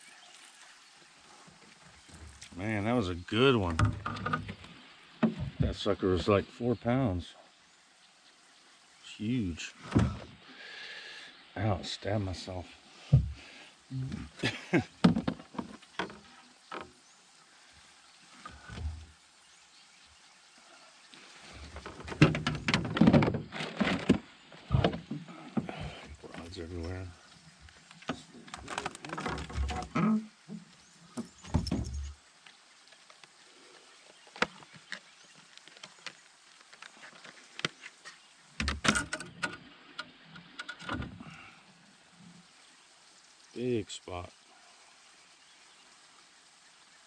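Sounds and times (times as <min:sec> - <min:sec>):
fishing gear knocking and clattering: 0:31.2 - 0:32.2, 0:38.6 - 0:39.6
fishing gear clicking and knocking: 0:38.6 - 0:41.1.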